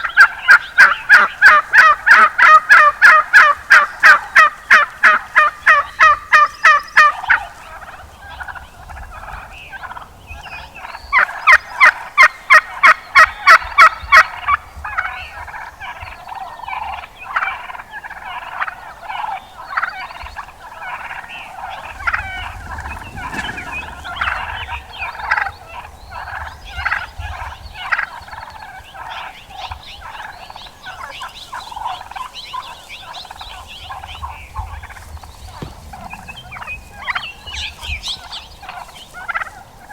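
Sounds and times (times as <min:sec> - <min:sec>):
turkeys gobbling and clucking: 0:00.0 - 0:39.9
turkey rapid yelps: 0:00.1 - 0:08.5.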